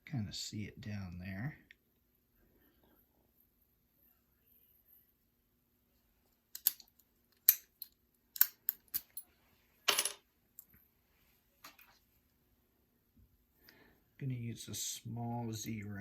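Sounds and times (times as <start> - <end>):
metal clicks of lockpicking tools: 6.5 - 9.2
padlock metallic rattle: 6.5 - 9.2.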